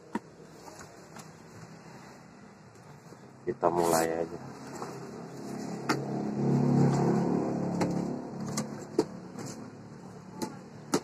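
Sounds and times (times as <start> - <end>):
passing vehicle engine rumble: 4.1 - 10.4.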